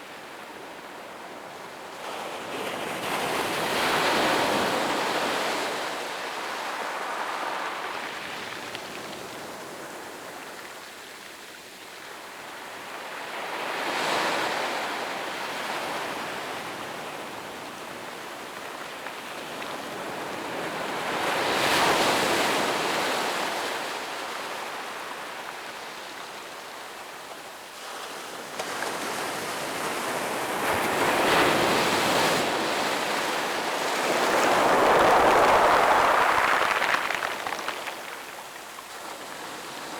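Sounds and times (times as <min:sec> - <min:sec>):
sea waves breaking on sand: 0:30.6 - 0:39.5.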